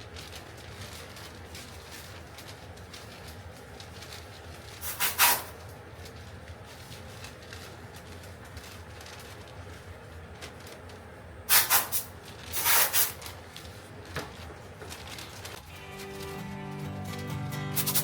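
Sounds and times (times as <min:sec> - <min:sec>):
paper rustling: 0:00.0 - 0:18.0
tape ripping off roll: 0:00.3 - 0:05.8, 0:11.5 - 0:16.5, 0:17.2 - 0:18.0.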